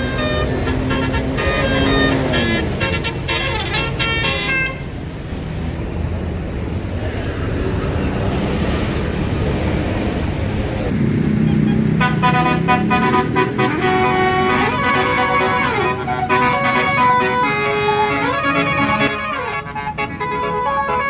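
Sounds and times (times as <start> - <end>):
bus melody horn playing a tune: 0.0 - 5.0, 11.3 - 21.0
bus engine rumble: 0.0 - 21.0.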